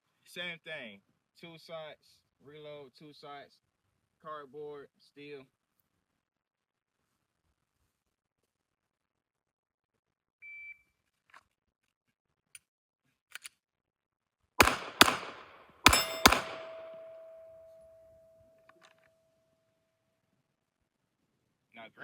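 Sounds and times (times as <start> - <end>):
pistol shots: 14.6 - 17.8
shot timer beep: 15.9 - 18.0
steel target ringing: 15.9 - 18.3.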